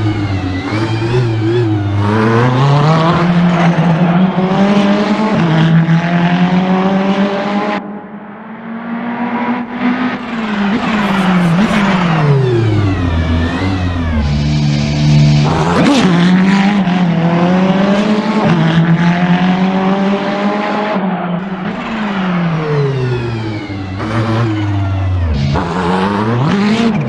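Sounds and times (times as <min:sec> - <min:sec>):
race car engine accelerating: 0:09.2 - 0:17.0
engine throttle blips: 0:09.4 - 0:14.9.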